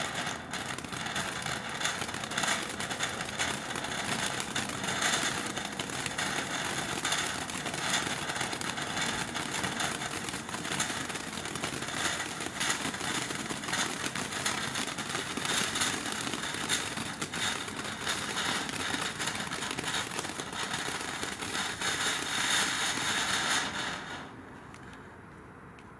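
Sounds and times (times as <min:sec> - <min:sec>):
firework hissing and crackling: 0:00.0 - 0:24.9.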